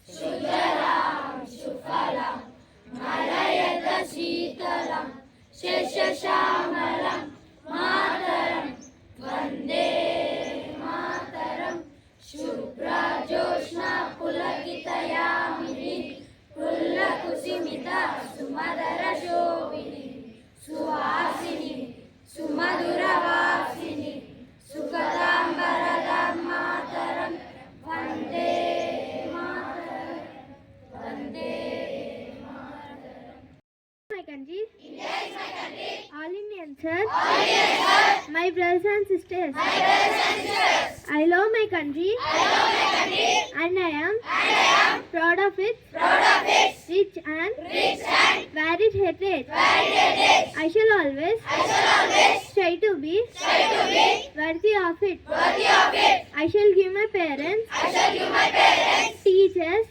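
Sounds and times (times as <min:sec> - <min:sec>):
children singing in unison: 0:00.0 - 0:33.3, 0:34.9 - 0:36.1, 0:37.1 - 0:38.3, 0:39.6 - 0:41.1, 0:42.2 - 0:43.5, 0:44.3 - 0:45.0, 0:46.0 - 0:46.8, 0:47.6 - 0:48.5, 0:49.5 - 0:50.6, 0:51.4 - 0:52.5, 0:53.4 - 0:54.3, 0:55.3 - 0:56.3, 0:57.7 - 0:59.2.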